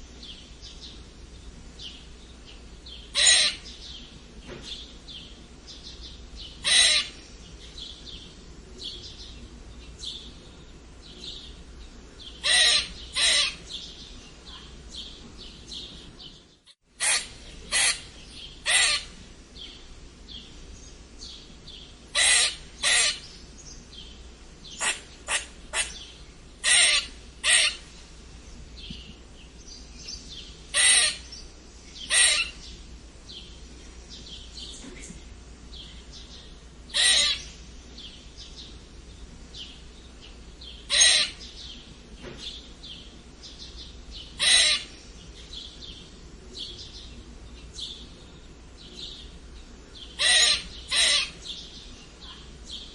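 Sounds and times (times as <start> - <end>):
squirrel squeaking: 3.2 - 3.7, 6.6 - 7.2, 12.4 - 13.6, 17.0 - 19.1, 22.1 - 23.3, 24.8 - 27.8, 30.7 - 31.3, 32.0 - 32.6, 36.9 - 37.5, 40.9 - 41.4, 44.4 - 44.9, 50.2 - 51.6.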